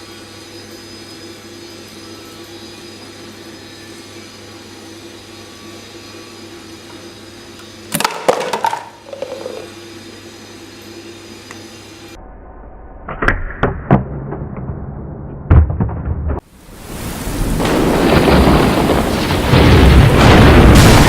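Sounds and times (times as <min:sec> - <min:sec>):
mechanical hum with tones: 0:00.0 - 0:21.0.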